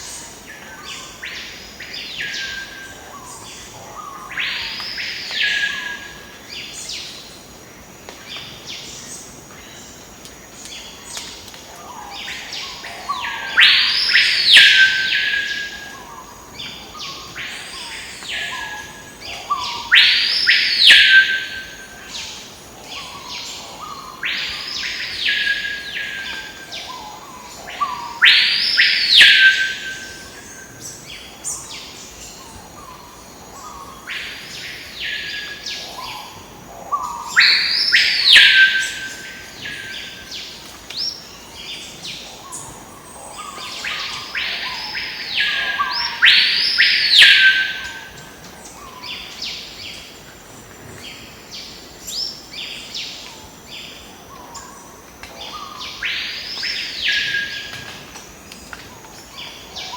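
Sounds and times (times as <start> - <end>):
birds whistling calls: 27.8 - 30.3, 43.4 - 48.2.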